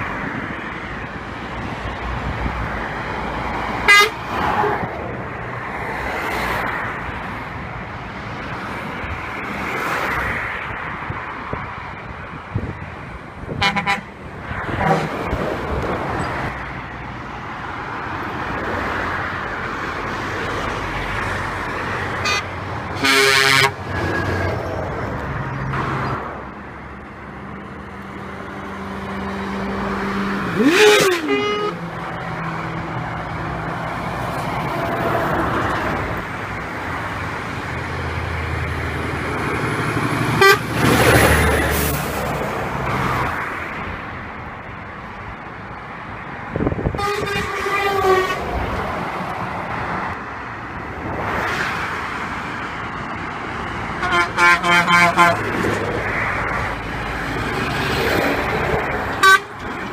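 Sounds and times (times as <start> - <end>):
heavy trucks passing: 0.0 - 59.9
truck horn blasts: 3.9 - 4.2, 13.6 - 14.1, 14.8 - 15.1, 22.2 - 23.8, 30.5 - 31.9, 40.3 - 40.8, 47.0 - 48.4, 54.0 - 55.5, 59.2 - 59.6.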